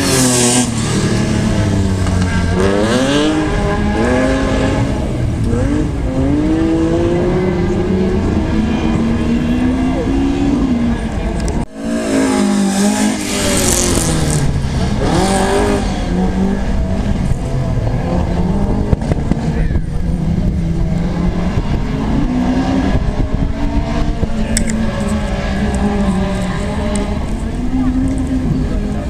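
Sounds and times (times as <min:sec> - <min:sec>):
rally car engine revving and idling: 0:00.0 - 0:29.0.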